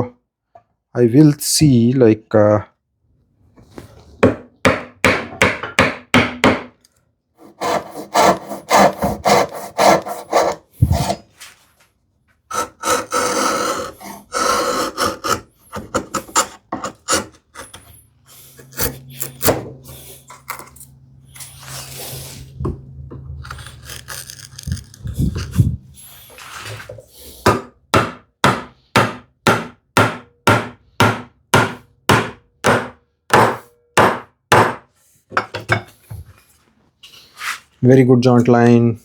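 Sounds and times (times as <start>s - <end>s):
hand saw cutting wood: 7.4s - 11.3s, 12.5s - 20.8s, 23.4s - 26.9s.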